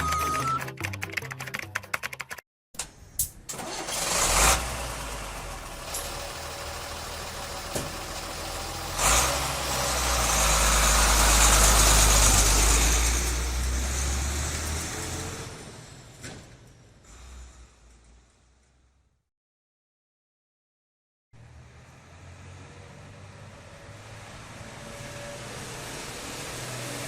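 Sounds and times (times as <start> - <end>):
truck engine rumbling: 3.0 - 18.9.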